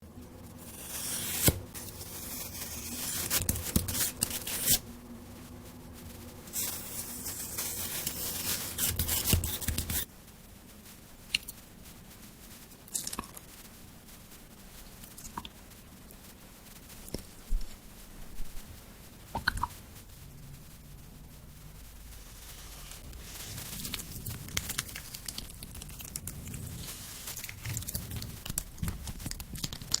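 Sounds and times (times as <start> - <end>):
jelly being sliced: 0.7 - 4.8
crisp crackly clicks: 11.2 - 12.0, 12.8 - 13.7, 22.9 - 30.0.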